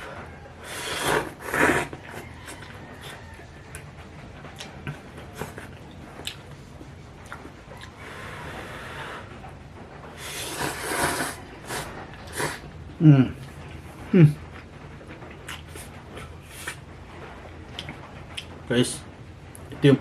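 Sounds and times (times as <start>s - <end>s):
slurping noodles: 0.6s - 3.2s, 10.2s - 12.7s.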